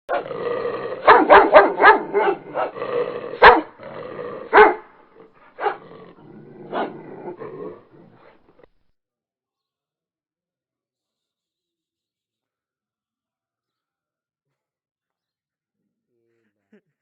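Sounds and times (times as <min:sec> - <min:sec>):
small dog barking: 0:01.0 - 0:02.8, 0:03.4 - 0:03.8, 0:04.4 - 0:04.9, 0:05.6 - 0:08.2.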